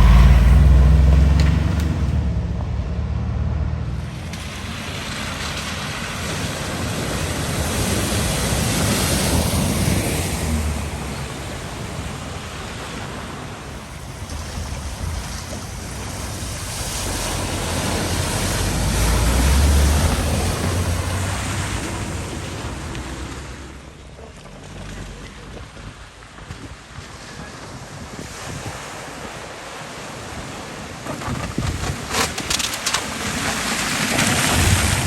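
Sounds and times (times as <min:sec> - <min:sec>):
low engine rumble: 0:00.0 - 0:27.8
water splashing from vehicle: 0:00.0 - 0:35.0.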